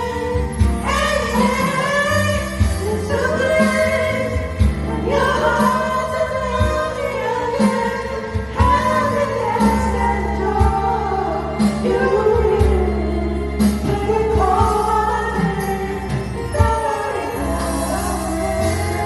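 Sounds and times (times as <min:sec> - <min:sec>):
music backing track with beat: 0:00.0 - 0:19.0
woman singing: 0:00.0 - 0:19.0.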